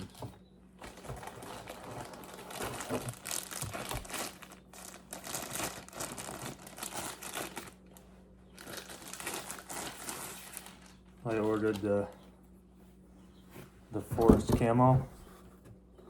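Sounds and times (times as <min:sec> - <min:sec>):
packaging crinkling: 0:00.0 - 0:12.1.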